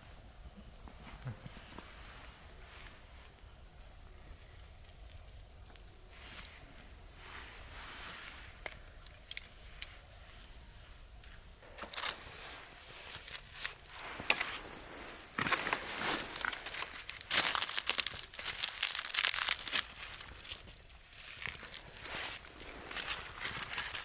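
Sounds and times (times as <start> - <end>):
plastic packaging crinkling: 11.7 - 24.0.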